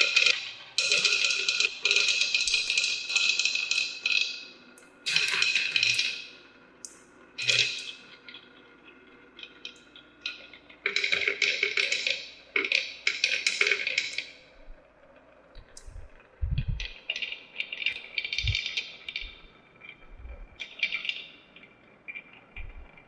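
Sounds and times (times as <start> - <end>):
marbles rattling down plastic run: 0.0 - 4.5, 5.1 - 6.3, 9.5 - 14.3
dull low thumps: 15.8 - 16.8.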